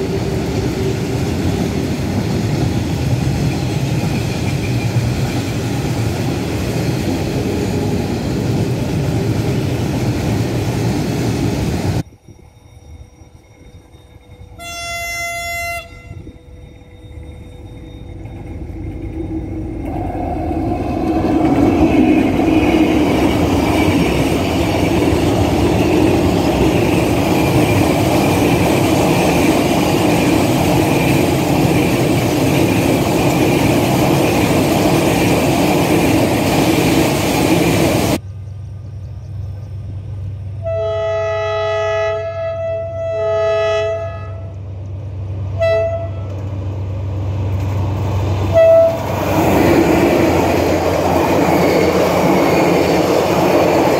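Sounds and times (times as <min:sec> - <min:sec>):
train passing with wheel noise: 0:00.0 - 0:53.9
two-tone train horn: 0:14.5 - 0:16.5, 0:40.6 - 0:44.6, 0:45.6 - 0:46.4, 0:48.5 - 0:49.2.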